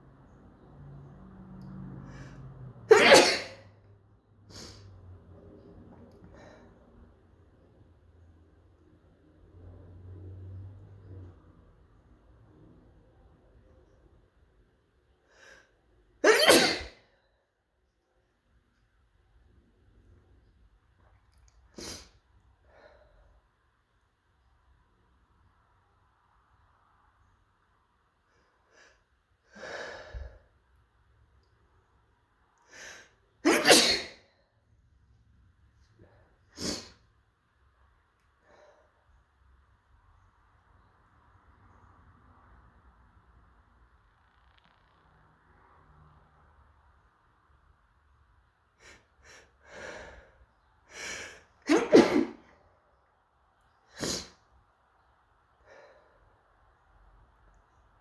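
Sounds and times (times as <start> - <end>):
person sneezing: 2.9 - 3.7, 16.2 - 17.0, 33.4 - 34.2, 36.6 - 37.0, 51.6 - 52.5, 54.0 - 54.4.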